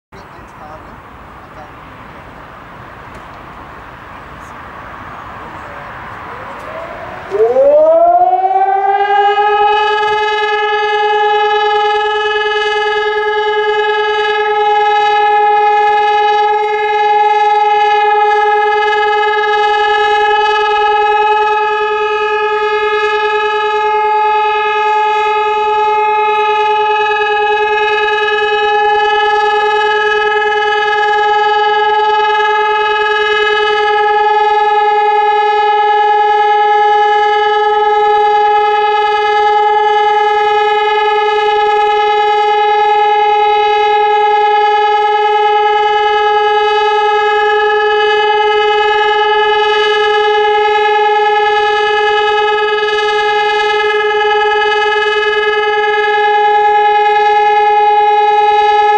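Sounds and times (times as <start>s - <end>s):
civil defence siren steady tone: 0.2s - 58.9s.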